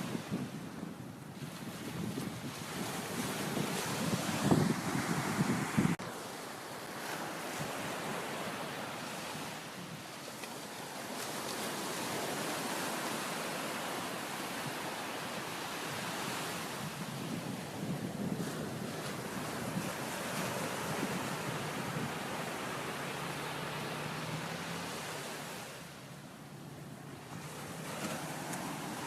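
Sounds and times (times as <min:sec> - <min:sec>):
wind buffeting microphone: 0:00.0 - 0:06.0, 0:11.0 - 0:25.9
surf waves hissing: 0:02.7 - 0:29.0.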